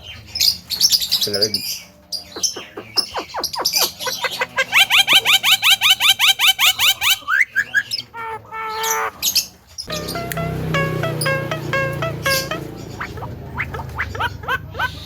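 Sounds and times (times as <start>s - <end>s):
myna bird calling: 1.6s - 15.0s
steady pitched tone: 9.9s - 13.7s.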